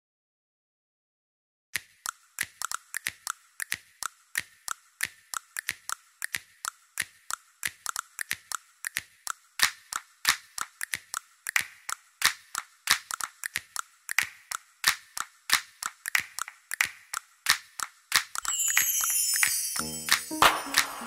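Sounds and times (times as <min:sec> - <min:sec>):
rapid sharp clicks: 0:01.8 - 0:18.5.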